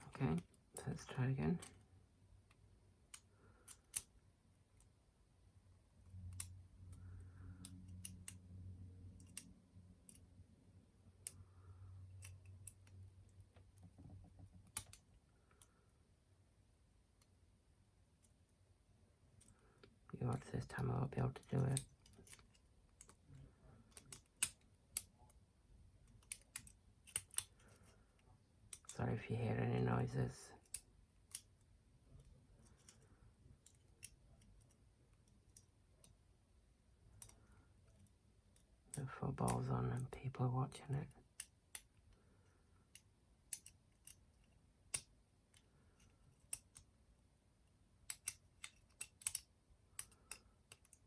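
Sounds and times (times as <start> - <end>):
lock pick clicking in padlock: 48.1 - 51.0.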